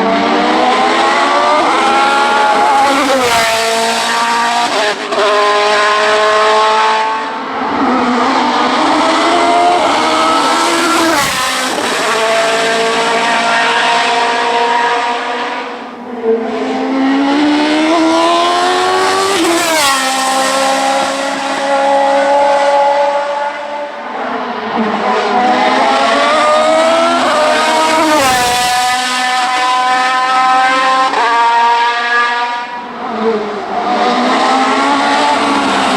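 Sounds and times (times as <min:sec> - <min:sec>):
race car engines at full throttle: 0:00.0 - 0:35.9.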